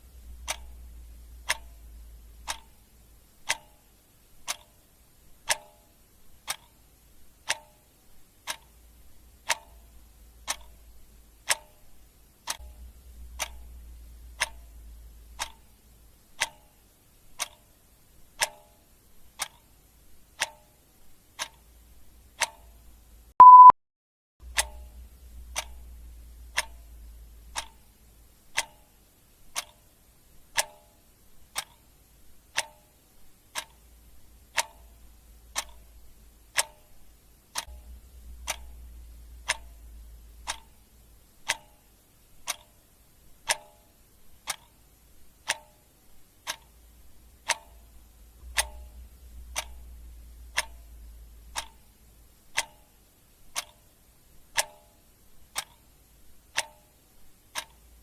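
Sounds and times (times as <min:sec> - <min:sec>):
clock ticking: 0:00.0 - 0:23.7, 0:24.4 - 0:58.0
short loud beep: 0:23.4 - 0:23.8.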